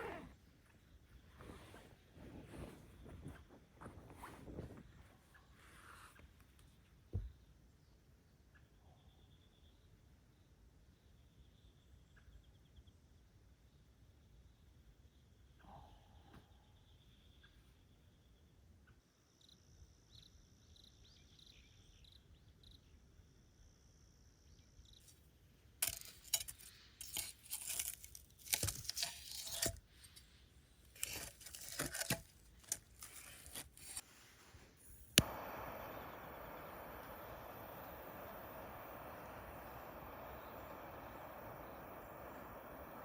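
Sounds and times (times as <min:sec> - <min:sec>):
steady hiss: 0:25.8 - 0:43.0
packaging crinkling and tearing: 0:30.9 - 0:34.0
sharp click: 0:34.9 - 0:40.9.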